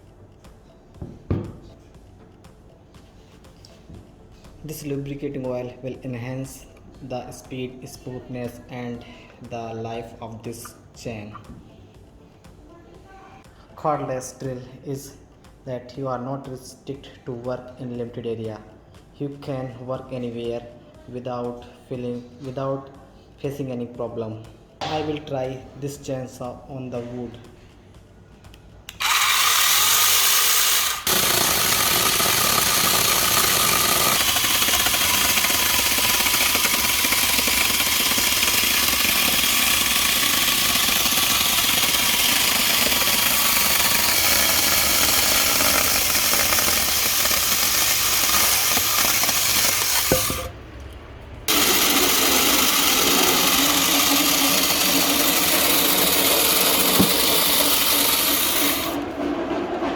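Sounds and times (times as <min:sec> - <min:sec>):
electric chainsaw cutting wood: 0:28.9 - 0:50.5, 0:51.5 - 0:59.0.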